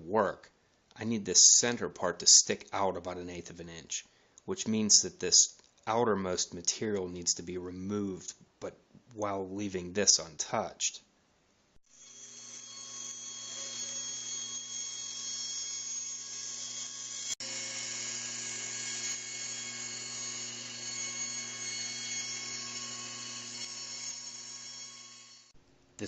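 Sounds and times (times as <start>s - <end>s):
power tool cutting plywood: 11.9s - 25.5s.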